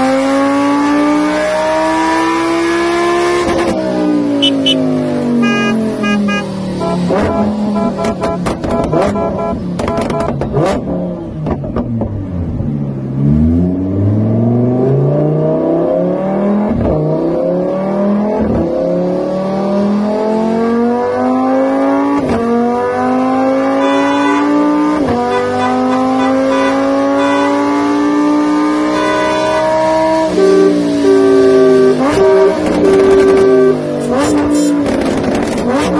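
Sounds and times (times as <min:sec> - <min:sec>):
car engine accelerating: 0:00.0 - 0:35.9.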